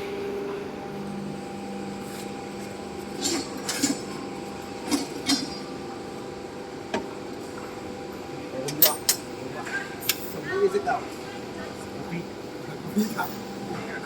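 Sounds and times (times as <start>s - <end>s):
steady hum: 0.0s - 14.0s
metal tools clinking: 8.7s - 9.2s.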